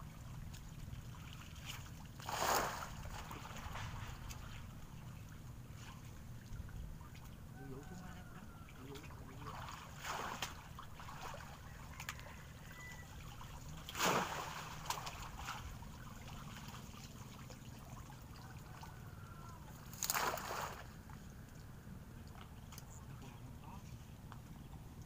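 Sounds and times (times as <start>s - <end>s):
water splashing: 0.0s - 7.4s, 8.7s - 21.1s
steady low hum: 0.0s - 25.0s.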